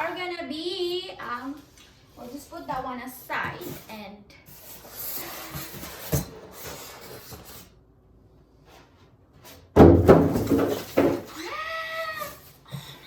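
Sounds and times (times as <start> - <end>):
heavy box thuds: 9.8 - 11.3.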